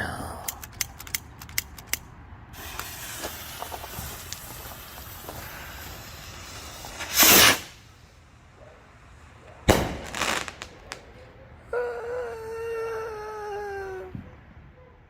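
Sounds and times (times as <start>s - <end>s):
firework rocket whoosh: 2.5s - 8.2s
small pops: 2.6s - 5.5s
firework bang: 2.6s - 7.9s, 9.7s - 11.1s.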